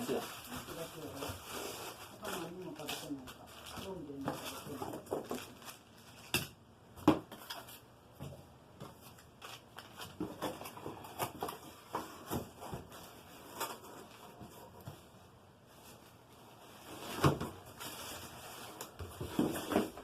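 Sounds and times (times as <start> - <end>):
packaging rustling: 0.0 - 6.6, 8.9 - 14.7.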